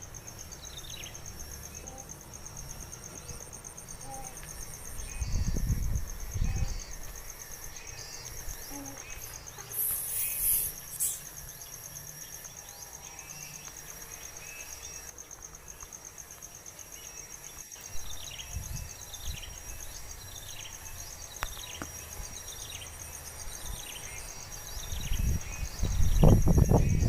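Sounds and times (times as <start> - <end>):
insect trilling: 0.1 - 15.2
short falling bird chirps: 9.7 - 11.3.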